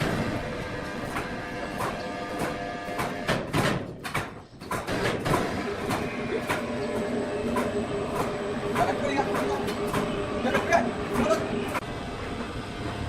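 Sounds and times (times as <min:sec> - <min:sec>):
sawmill machinery humming: 0:05.3 - 0:13.0.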